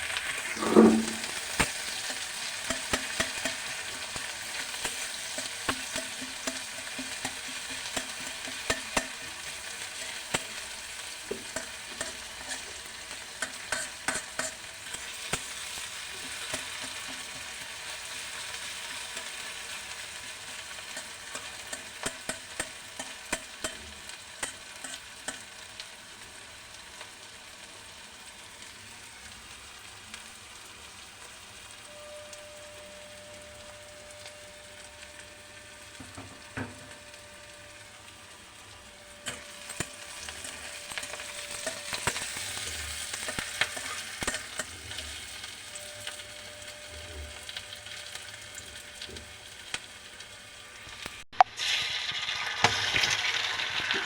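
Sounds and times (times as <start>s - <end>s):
food sizzling in a pan: 0.0s - 54.0s
spatula scraping a pan: 0.5s - 25.5s, 39.2s - 47.6s.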